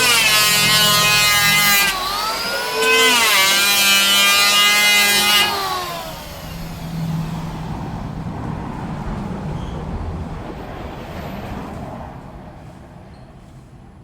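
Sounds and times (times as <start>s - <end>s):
power tool motor spinning down: 0.0s - 7.7s
low rumble: 3.7s - 12.5s.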